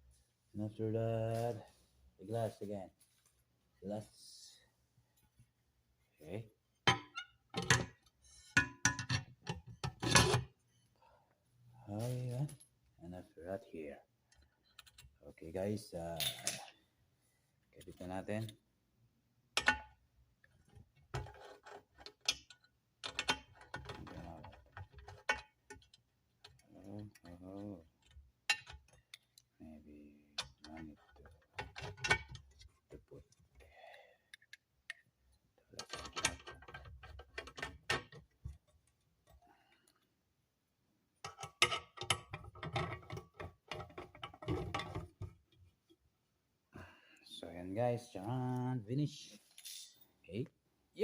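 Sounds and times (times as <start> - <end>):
metal tubes clicking and knocking: 6.8 - 10.6, 19.5 - 29.6, 30.2 - 33.6, 34.3 - 40.1, 41.2 - 46.0.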